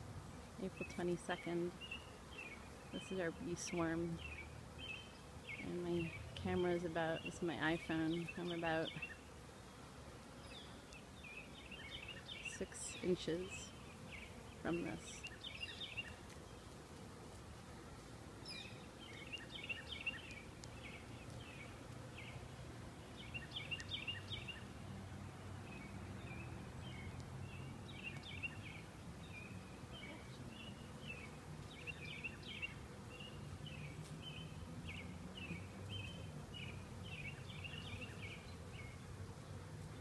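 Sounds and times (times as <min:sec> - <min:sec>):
bee swarm humming: 0:00.0 - 0:40.0
songbird chirping: 0:00.6 - 0:09.4, 0:10.3 - 0:16.8, 0:18.4 - 0:39.6.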